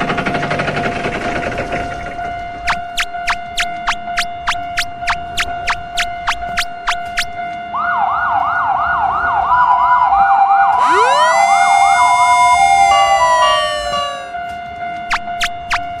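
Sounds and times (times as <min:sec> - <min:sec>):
upward-gliding siren wail: 0:01.2 - 0:16.0
rising siren whoops: 0:02.0 - 0:16.0
steady tone: 0:02.6 - 0:07.4, 0:10.8 - 0:14.4
short beeps: 0:02.7 - 0:07.4.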